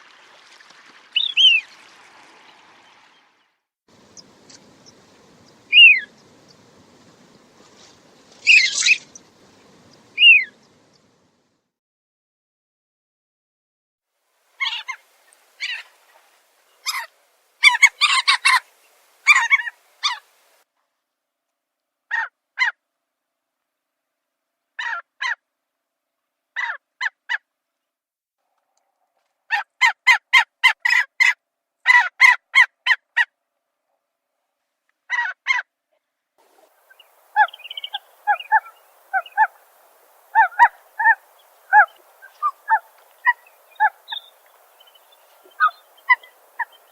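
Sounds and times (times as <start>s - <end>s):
faint background hiss: 0.0s - 11.7s, 14.1s - 21.9s, 36.4s - 46.9s
shorebird calls: 0.8s - 1.9s, 3.9s - 11.1s, 14.6s - 20.5s, 36.4s - 46.9s.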